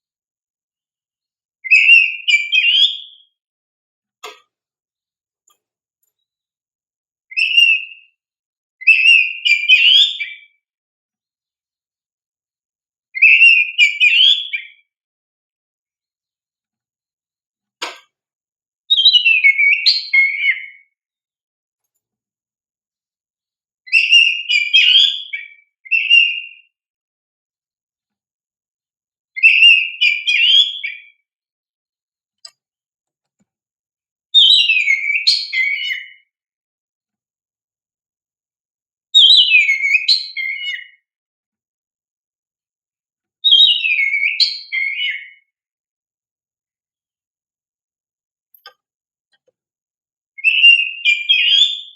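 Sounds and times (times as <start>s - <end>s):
bird singing whistled notes: 1.6s - 3.4s, 7.3s - 8.2s, 8.8s - 10.6s, 13.2s - 14.9s, 18.9s - 21.0s, 23.9s - 26.7s, 29.4s - 31.2s, 34.4s - 36.3s, 39.2s - 41.1s, 43.4s - 45.5s, 50.4s - 51.9s.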